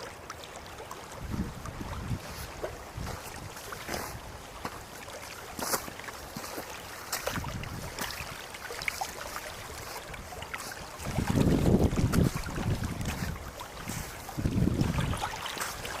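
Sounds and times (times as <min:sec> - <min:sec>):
wind buffeting microphone: 0:01.2 - 0:04.4, 0:07.3 - 0:08.0, 0:10.1 - 0:15.4.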